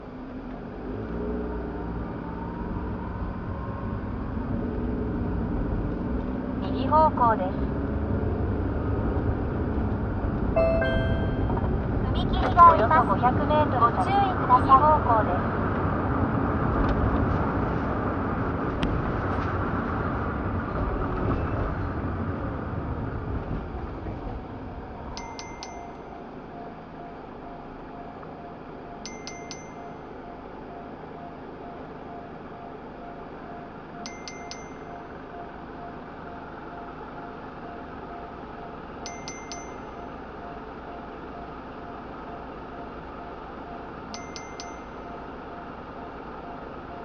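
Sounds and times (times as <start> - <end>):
car engine and road noise: 0.0 - 47.0
electronic chime pings: 10.6 - 12.0, 25.2 - 47.0.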